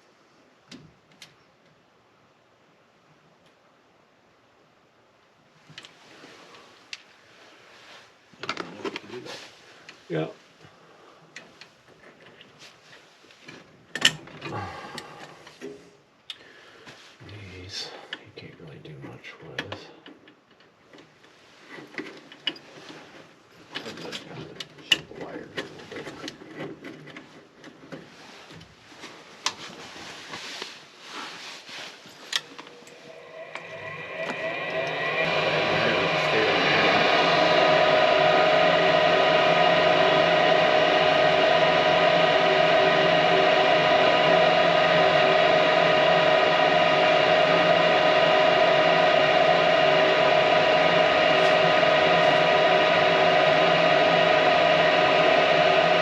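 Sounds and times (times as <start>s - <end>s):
constant hum: 32.0s - 56.0s
machine whirring: 32.4s - 56.0s.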